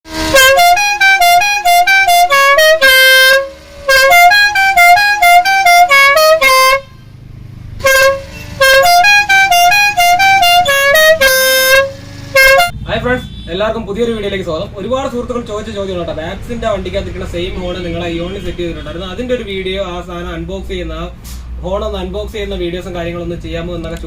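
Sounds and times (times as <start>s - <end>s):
musical air horn tune: 0.1s - 7.1s, 7.8s - 13.6s.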